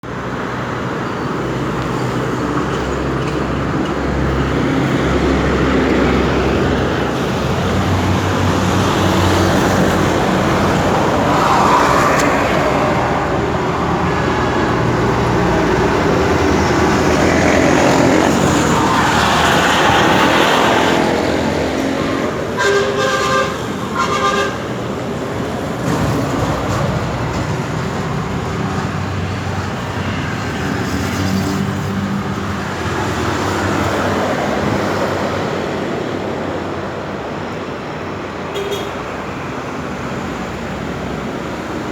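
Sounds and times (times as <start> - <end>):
road traffic passing: 0.0 - 41.9
vehicle horn honking: 22.5 - 24.6, 38.5 - 39.0.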